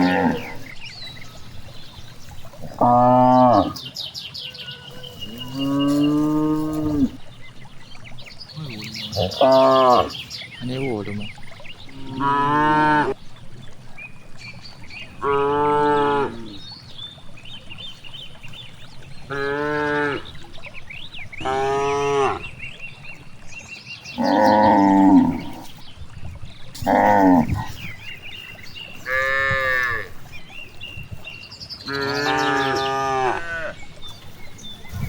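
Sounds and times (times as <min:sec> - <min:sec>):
cows mooing: 0:00.0 - 0:03.8, 0:04.8 - 0:07.4, 0:08.6 - 0:10.3, 0:11.8 - 0:13.2, 0:15.1 - 0:16.7, 0:18.6 - 0:22.6, 0:24.2 - 0:25.8, 0:26.8 - 0:31.2, 0:31.8 - 0:35.0.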